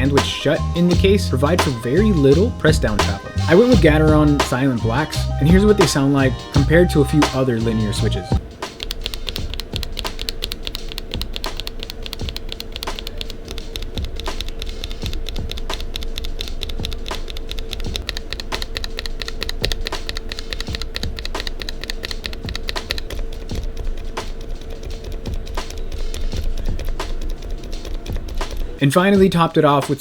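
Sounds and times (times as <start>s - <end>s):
mechanical keyboard keystrokes: 8.8s - 28.6s.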